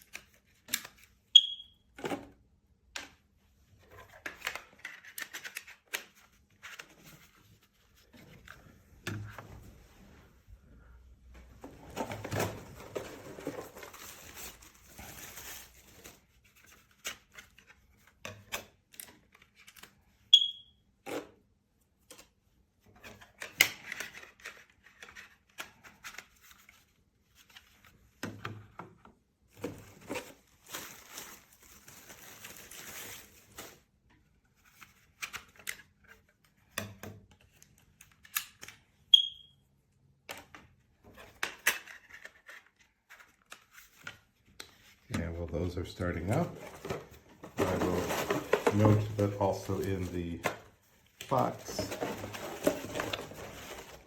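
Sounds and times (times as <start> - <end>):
alarm beeps: 1.4 - 1.8, 20.3 - 20.7, 39.1 - 39.6
packaging rustle: 11.9 - 17.6, 29.8 - 33.9, 46.0 - 54.0.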